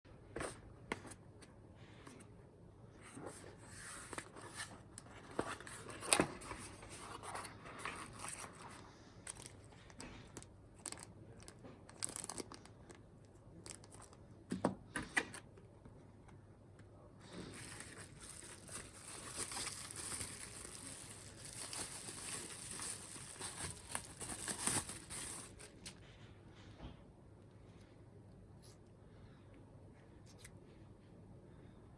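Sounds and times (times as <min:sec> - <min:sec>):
packaging crinkling and tearing: 0:05.2 - 0:13.0, 0:13.6 - 0:14.2, 0:17.4 - 0:26.0.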